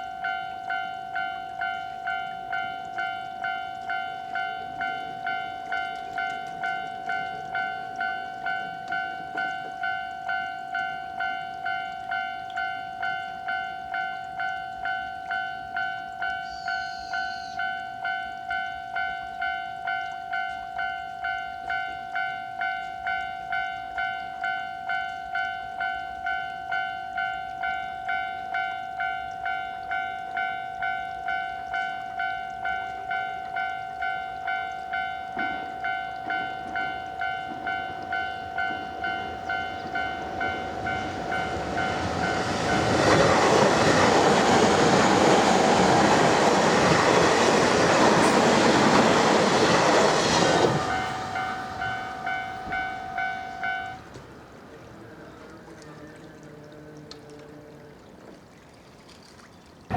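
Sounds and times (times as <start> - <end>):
level-crossing warning bell ringing: 0.0 - 56.5
train running noise: 34.8 - 55.5.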